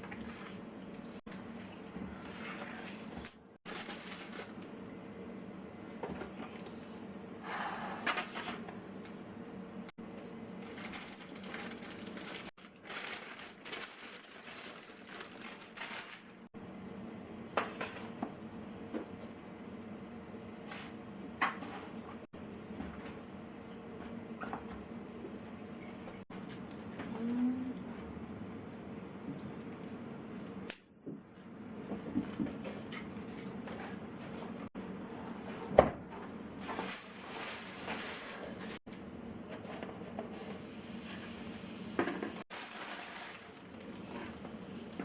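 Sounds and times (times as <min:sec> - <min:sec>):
objects being moved and rustled: 0:10.6 - 0:16.5, 0:31.9 - 0:45.0.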